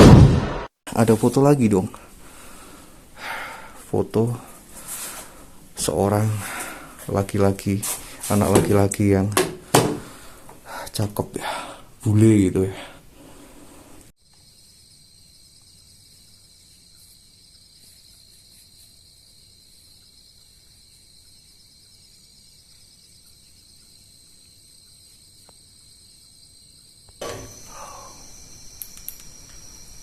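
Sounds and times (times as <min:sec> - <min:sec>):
thump: 0:00.0 - 0:00.7, 0:09.4 - 0:10.1
insects chirring: 0:14.2 - 0:30.0.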